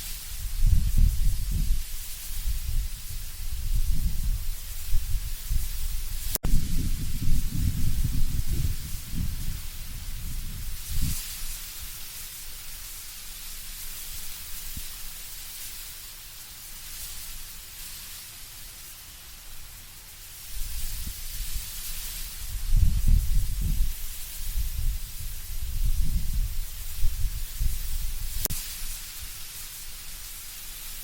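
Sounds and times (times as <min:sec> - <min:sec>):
wind rustling leaves: 0:00.0 - 0:31.0
low rumble of gusts: 0:00.2 - 0:12.0, 0:20.4 - 0:30.0.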